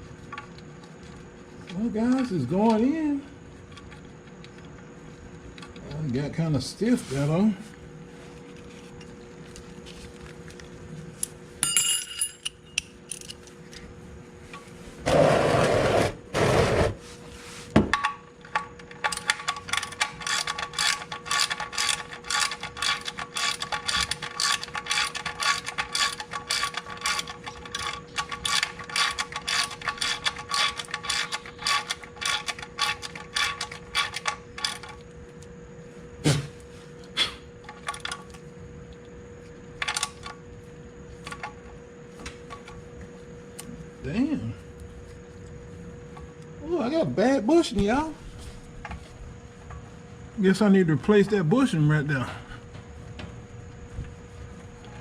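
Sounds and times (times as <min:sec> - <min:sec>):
ratchet wrench clicking: 0:19.0 - 0:34.9.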